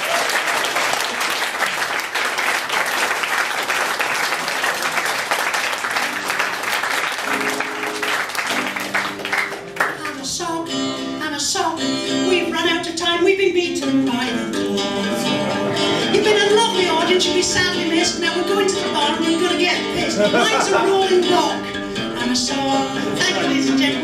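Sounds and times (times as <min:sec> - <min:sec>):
audience applauding: 0:00.0 - 0:10.3
guitar playing: 0:04.8 - 0:24.0.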